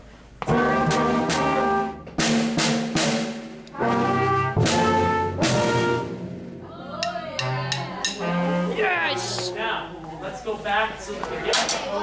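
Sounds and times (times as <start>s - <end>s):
brass playing held chords: 0.4s - 2.7s, 3.6s - 6.4s, 7.5s - 9.8s
sharp percussion hits: 0.5s - 8.8s.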